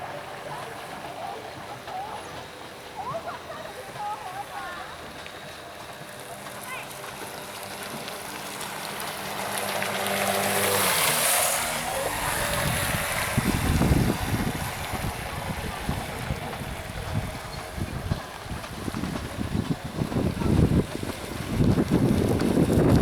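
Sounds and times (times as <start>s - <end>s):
rc boat motor and spray hiss: 0.0s - 23.0s
wind buffeting microphone: 8.1s - 23.0s.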